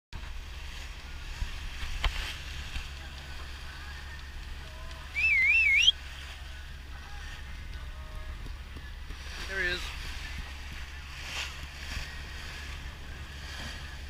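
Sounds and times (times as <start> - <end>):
wind: 0.1 - 14.0
water noise: 0.2 - 14.0
warbling whistle: 5.1 - 6.0.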